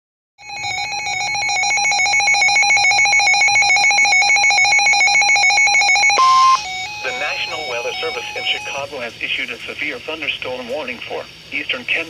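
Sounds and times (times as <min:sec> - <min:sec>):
fluttering electronic alert tone: 0:02.8 - 0:08.8.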